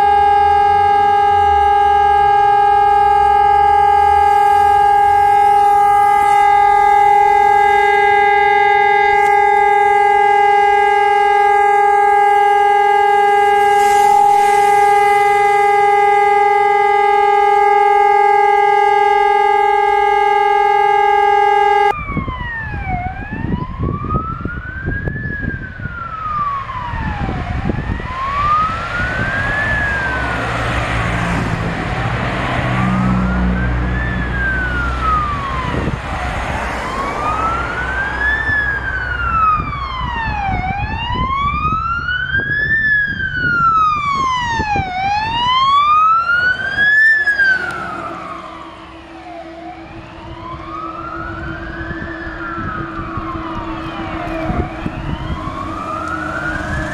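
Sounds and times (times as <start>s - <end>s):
diesel truck engine: 0.0s - 56.9s
fire engine siren wailing: 0.0s - 56.9s.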